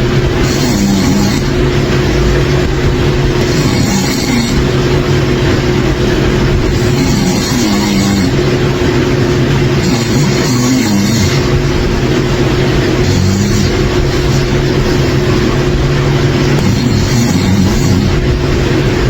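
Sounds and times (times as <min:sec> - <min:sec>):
steady low hum: 0:00.0 - 0:19.0
person snoring loudly: 0:00.4 - 0:01.6, 0:03.4 - 0:04.9, 0:06.6 - 0:08.6, 0:09.7 - 0:11.8, 0:12.9 - 0:15.5, 0:16.4 - 0:18.4.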